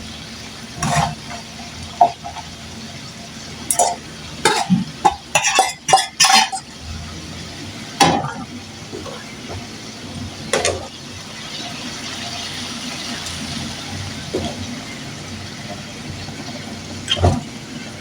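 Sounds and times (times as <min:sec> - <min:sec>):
food sizzling: 0:00.0 - 0:18.0
metal utensil scraping a pan: 0:00.8 - 0:02.6, 0:03.7 - 0:06.7.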